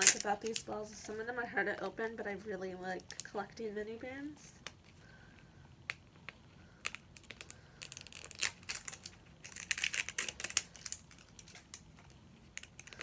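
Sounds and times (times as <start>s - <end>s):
plastic crinkling: 0.0s - 1.1s, 5.9s - 13.0s.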